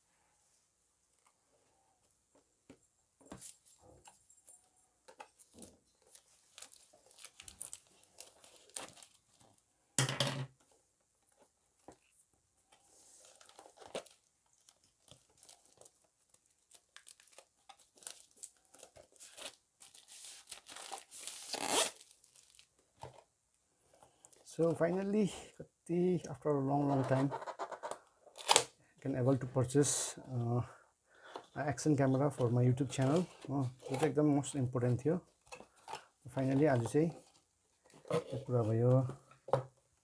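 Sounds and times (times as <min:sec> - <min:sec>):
packaging rustling and crinkling: 0:03.3 - 0:09.6, 0:11.2 - 0:23.3
packaging tearing: 0:16.7 - 0:22.7.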